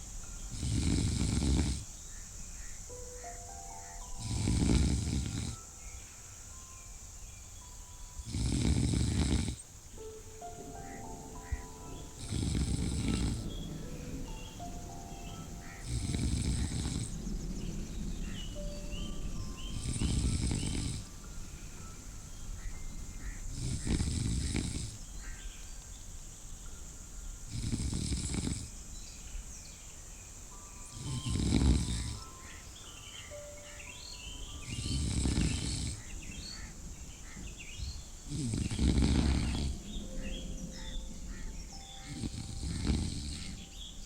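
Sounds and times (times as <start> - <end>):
person snoring: 0.5 - 1.9, 4.2 - 5.6, 8.2 - 9.6, 11.5 - 14.7, 15.8 - 17.2, 19.8 - 21.1, 23.5 - 25.0, 27.5 - 28.7, 31.0 - 32.2, 34.6 - 36.0, 38.3 - 39.9, 42.1 - 43.6.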